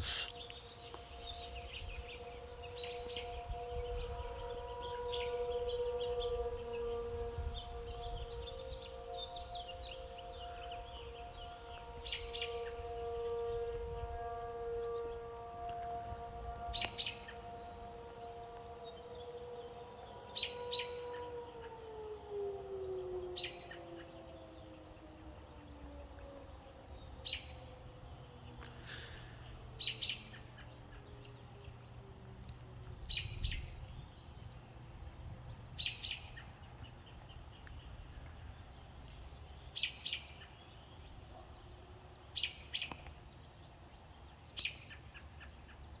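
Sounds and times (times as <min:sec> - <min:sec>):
bird chirping: 0:00.0 - 0:22.2, 0:33.0 - 0:46.0
distant warning siren winding down: 0:00.0 - 0:41.2.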